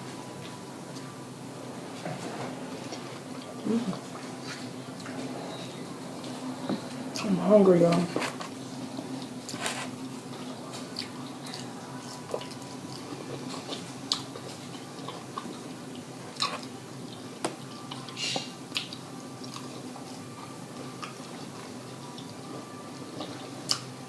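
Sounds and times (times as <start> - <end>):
faint steady hum: 0.0 - 24.0
crispy food being chewed: 6.2 - 24.0.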